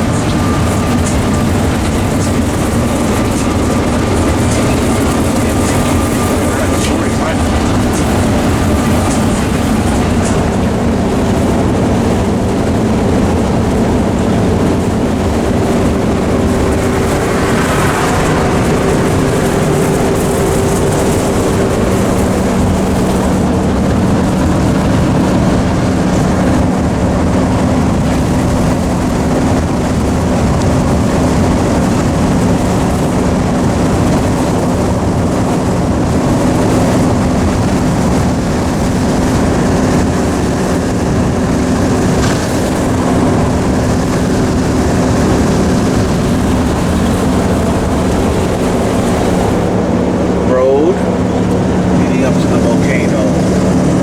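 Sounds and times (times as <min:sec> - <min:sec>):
vehicle engine and road noise: 0:00.0 - 0:54.0.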